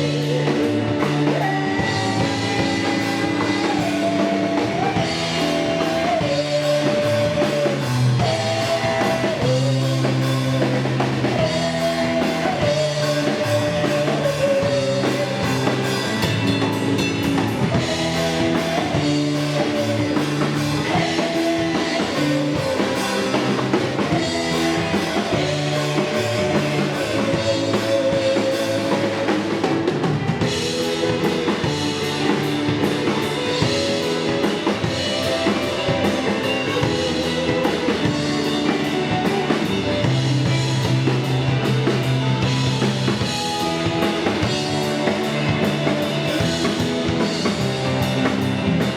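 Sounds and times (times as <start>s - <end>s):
bass guitar: 0.0s - 48.9s
drum kit: 0.0s - 48.9s.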